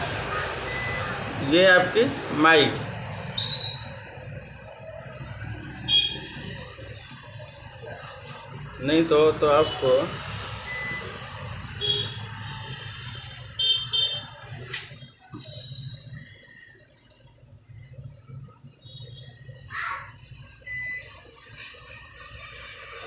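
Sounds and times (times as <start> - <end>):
high-pitched electronic beeps: 0.0 - 6.7, 10.5 - 11.6, 15.0 - 19.7, 20.5 - 21.3.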